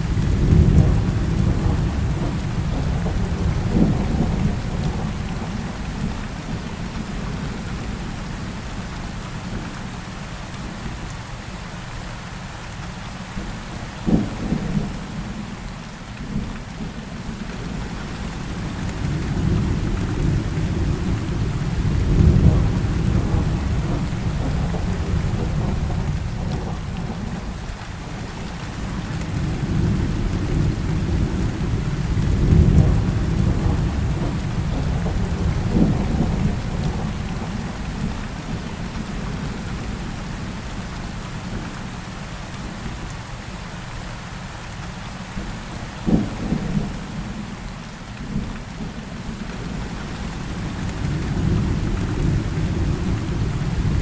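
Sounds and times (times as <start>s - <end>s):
rolling thunder: 0.0s - 6.1s, 18.5s - 27.6s, 28.2s - 40.0s, 49.6s - 54.0s
heavy rain falling: 0.0s - 54.0s.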